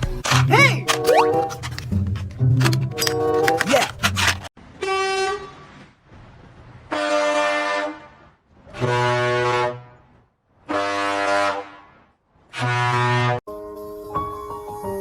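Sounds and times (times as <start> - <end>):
vehicle horn blasts: 10.7 - 11.9, 12.6 - 13.4.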